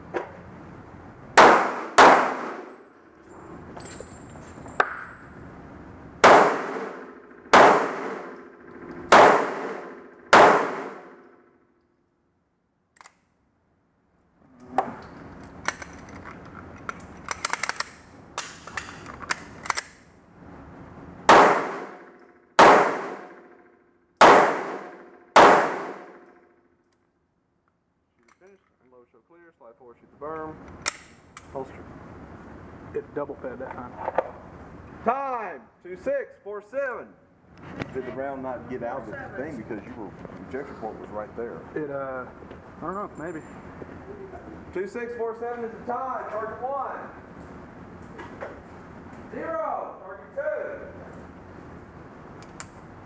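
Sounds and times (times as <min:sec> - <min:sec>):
pistol shots with echo: 0:01.4 - 0:02.8, 0:06.2 - 0:11.2, 0:21.3 - 0:23.5, 0:24.2 - 0:26.2
metallic clicks and clatter: 0:15.0 - 0:20.0.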